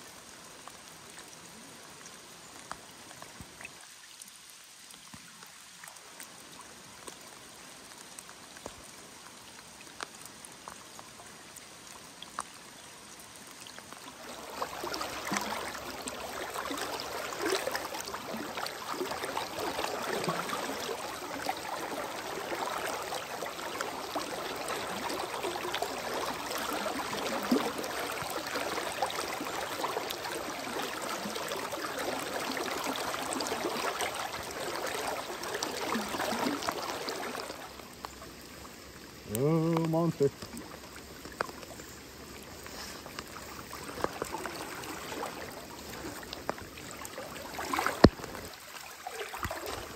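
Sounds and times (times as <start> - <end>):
faint ticks: 2.0 - 6.4, 7.9 - 14.0, 37.9 - 38.3, 39.0 - 44.4
river water rushing: 13.5 - 49.9.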